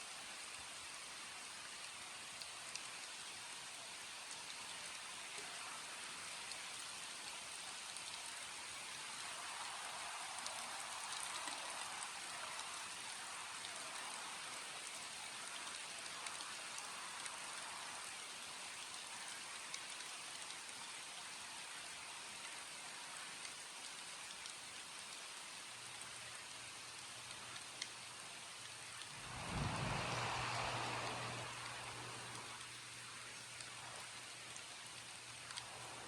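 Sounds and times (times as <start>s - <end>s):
steady rain: 0.0s - 36.0s
raindrops ticking: 1.6s - 36.0s.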